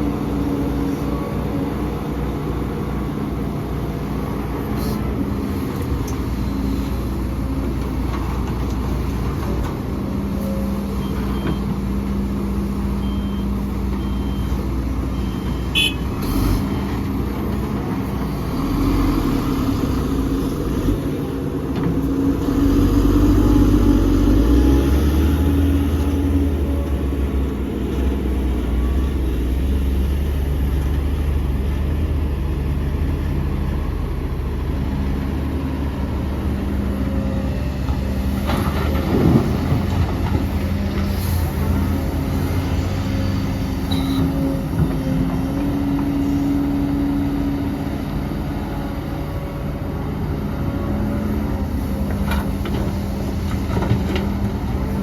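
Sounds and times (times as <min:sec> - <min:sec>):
diesel machinery running: 0:00.0 - 0:55.0
short high beeps: 0:43.9 - 0:44.2.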